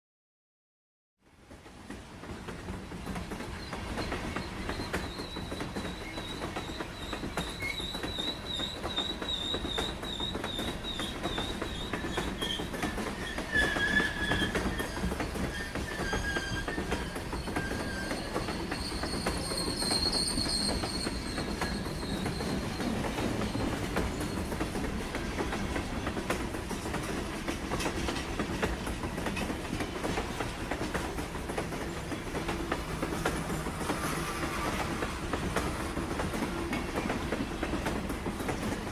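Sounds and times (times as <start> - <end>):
train wheels rumbling on rails: 1.3 - 38.9
metal wheel squeal: 4.7 - 24.6.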